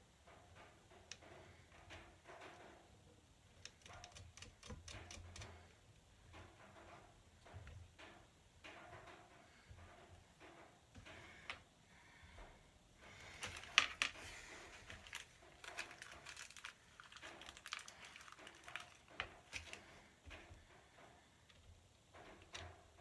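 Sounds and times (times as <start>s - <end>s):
small parts and tools clicking: 3.5s - 5.7s, 13.2s - 23.0s.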